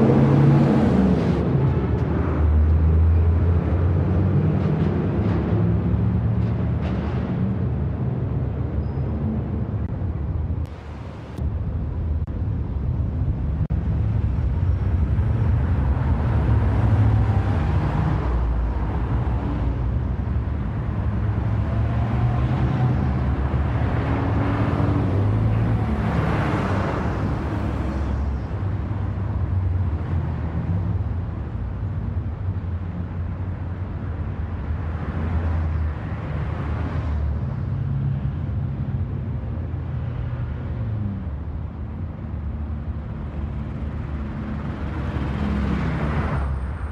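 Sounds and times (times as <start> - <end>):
low rumble of car engines: 0.0 - 46.9
vehicles passing: 0.0 - 46.9.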